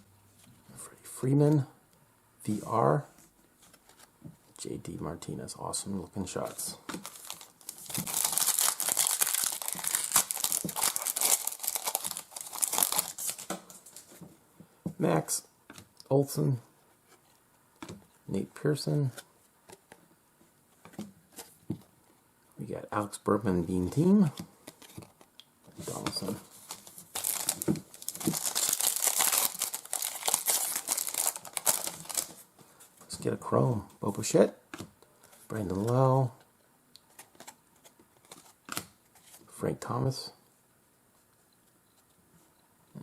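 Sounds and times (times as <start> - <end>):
wrapper crinkling and tearing: 7.0 - 13.5, 25.9 - 32.4.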